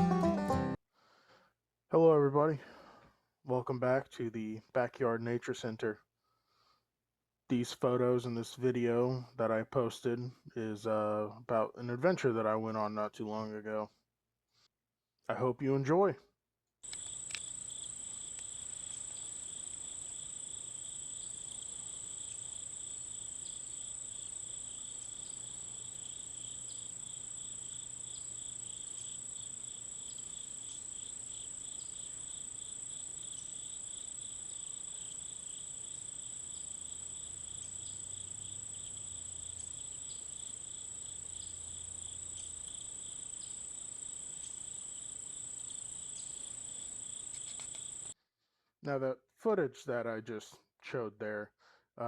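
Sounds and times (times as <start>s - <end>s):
high-pitched insect trill: 16.9s - 48.1s
low pulsing insect trill: 16.9s - 48.2s.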